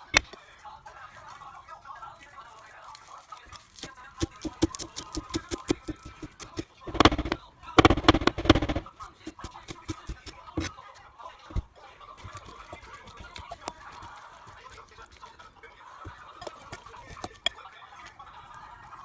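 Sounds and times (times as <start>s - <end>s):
knife chopping on cutting board: 4.2s - 10.7s.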